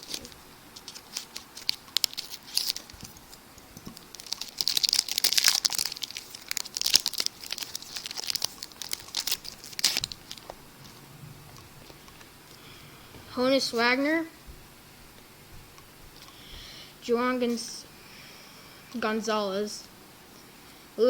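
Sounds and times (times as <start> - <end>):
wrapper crinkling and tearing: 0.0 - 11.0.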